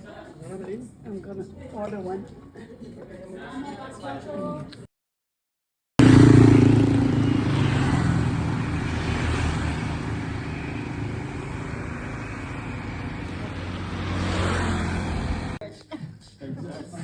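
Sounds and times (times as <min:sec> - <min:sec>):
vehicle engine running: 0:06.0 - 0:15.6.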